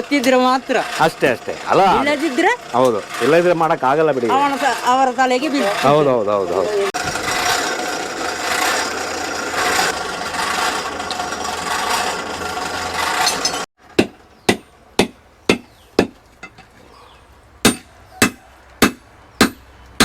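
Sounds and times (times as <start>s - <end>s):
rasping scrape: 7.0s - 13.7s
hammer striking blade on anvil: 17.7s - 19.6s.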